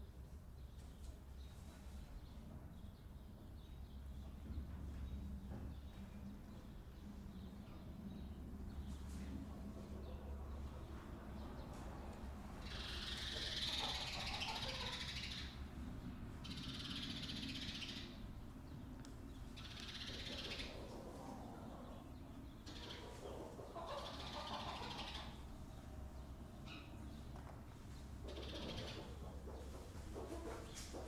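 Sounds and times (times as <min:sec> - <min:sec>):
chickens clucking: 0:08.8 - 0:31.0.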